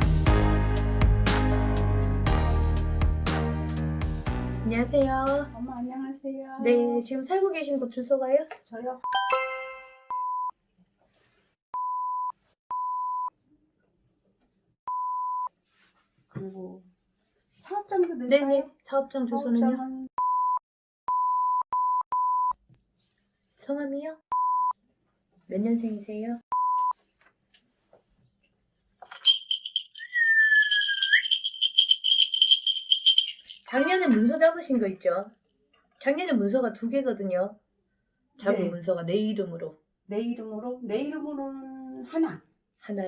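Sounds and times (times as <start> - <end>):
ritual bells jingling: 9.2 - 10.0, 29.2 - 34.0
thin whistling tone: 29.2 - 33.9.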